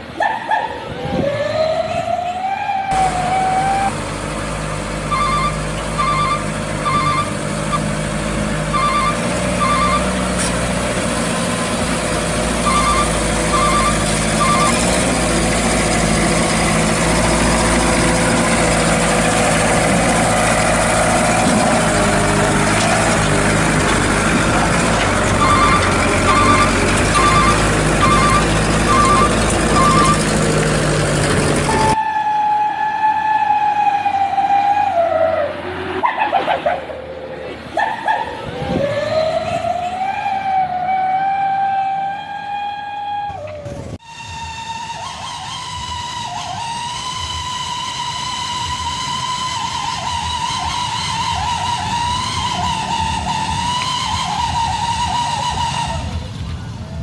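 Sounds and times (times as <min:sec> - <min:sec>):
simulated diesel engine running: 0:01.8 - 0:57.0
quick electronic beeps: 0:05.2 - 0:07.8, 0:08.8 - 0:10.1, 0:12.7 - 0:14.8, 0:25.4 - 0:30.2.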